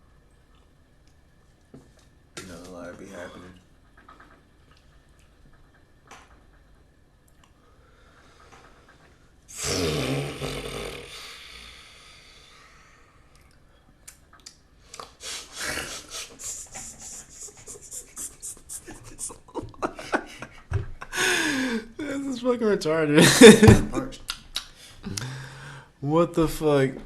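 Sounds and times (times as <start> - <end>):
quick breathy bursts: 15.1 - 19.0
person exhaling loudly: 21.1 - 22.0.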